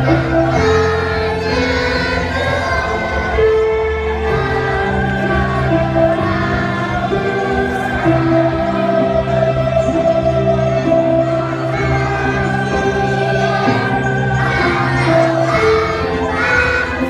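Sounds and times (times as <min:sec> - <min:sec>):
slow choir-like song: 0:00.0 - 0:17.0.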